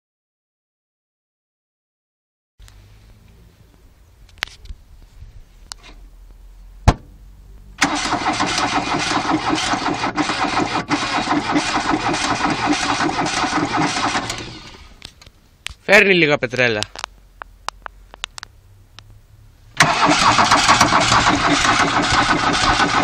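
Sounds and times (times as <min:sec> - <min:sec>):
diesel engine cranking and churning: 0:07.8 - 0:15.1, 0:19.6 - 0:23.0.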